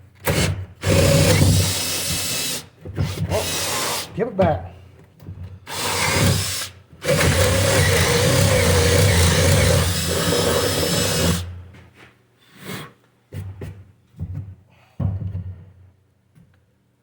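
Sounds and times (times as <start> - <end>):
power drill boring wood: 0.2 - 4.1, 5.7 - 11.5
knocks and thumps: 13.3 - 15.8.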